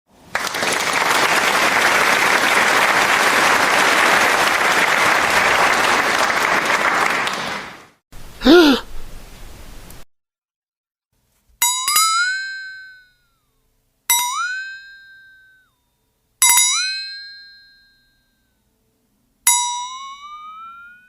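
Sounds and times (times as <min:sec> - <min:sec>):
crowd applauding: 0:00.1 - 0:08.0
short gasp: 0:08.4 - 0:08.9.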